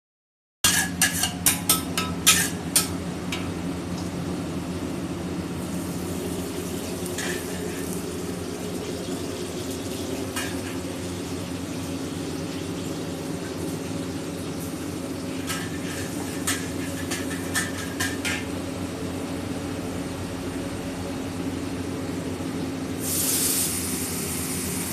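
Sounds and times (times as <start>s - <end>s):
metal spatula clanking on wok: 0.6s - 3.5s
frying hiss: 0.7s - 24.9s.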